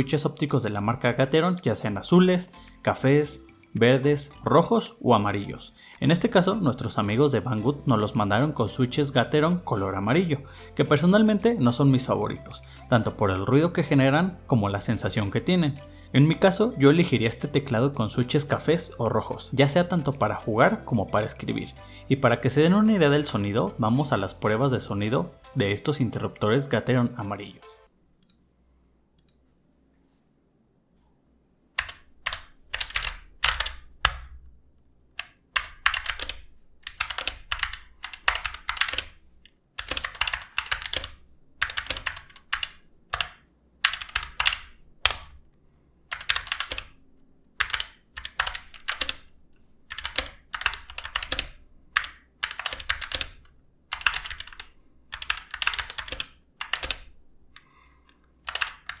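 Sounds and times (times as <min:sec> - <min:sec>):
keyboard keystrokes clacking: 0:31.8 - 0:34.4, 0:35.2 - 0:39.2, 0:39.8 - 0:45.4, 0:46.1 - 0:47.0, 0:47.6 - 0:49.3, 0:49.9 - 0:57.1, 0:58.5 - 0:59.0.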